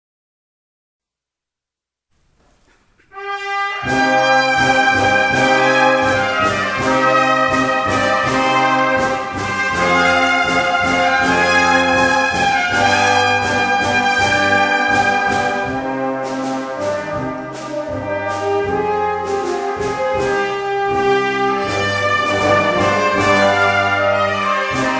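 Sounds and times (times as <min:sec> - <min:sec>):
brass ensemble playing: 0:03.1 - 0:24.9
steady drum beat: 0:15.8 - 0:24.4.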